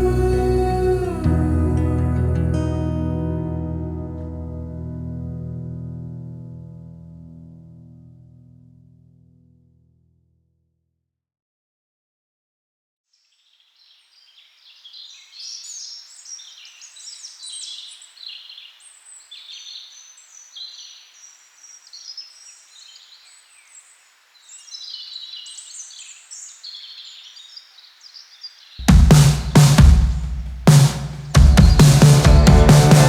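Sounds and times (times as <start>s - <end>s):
small birds chirping: 13.1s - 29.0s, 31.3s - 32.5s
electronic music with heavy bass: 28.8s - 33.0s.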